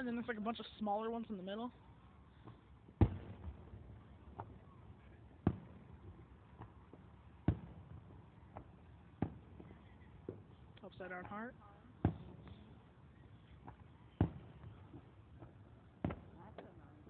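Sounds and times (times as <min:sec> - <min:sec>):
faint fireworks pops: 0:00.0 - 0:17.0
fireworks bangs: 0:00.0 - 0:17.0.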